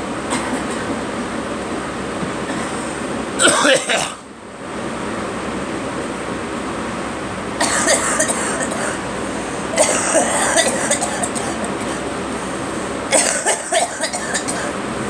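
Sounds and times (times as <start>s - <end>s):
person coughing: 0.3s - 0.9s, 3.4s - 4.2s, 7.6s - 9.0s, 9.8s - 12.1s, 13.1s - 14.8s.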